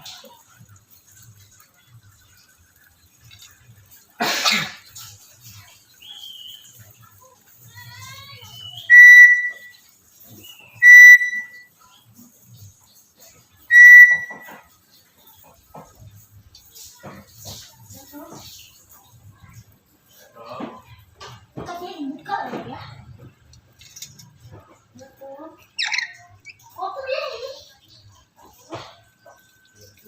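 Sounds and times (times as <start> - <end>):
parrot calling: 8.5 - 9.7, 10.6 - 11.6, 13.7 - 14.6, 25.8 - 26.8
bird whistles: 8.5 - 9.8, 10.4 - 11.7, 13.7 - 14.6.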